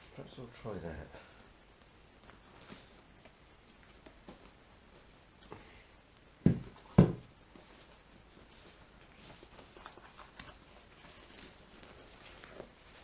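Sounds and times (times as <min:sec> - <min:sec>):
faint rustling: 0:06.9 - 0:13.0.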